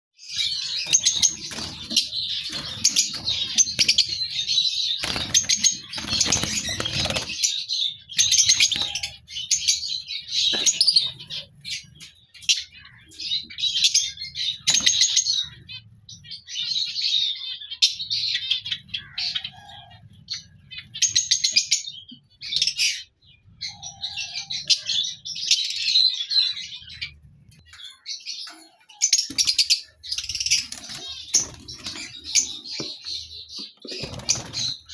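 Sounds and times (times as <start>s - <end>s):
lovebirds chattering and chirping: 0.2s - 34.9s
wings flapping: 0.8s - 4.4s, 5.0s - 7.5s, 33.9s - 34.9s.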